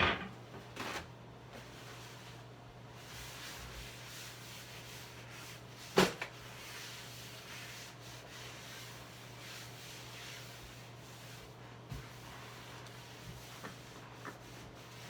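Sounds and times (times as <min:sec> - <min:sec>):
rubbing and scraping on hard surface: 0:03.0 - 0:15.0.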